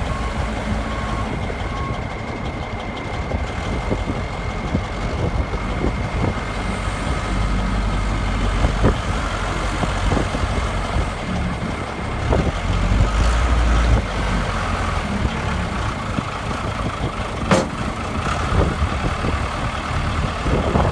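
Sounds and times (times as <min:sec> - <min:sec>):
diesel engine running: 0:00.0 - 0:20.9
knocks: 0:17.5 - 0:18.0.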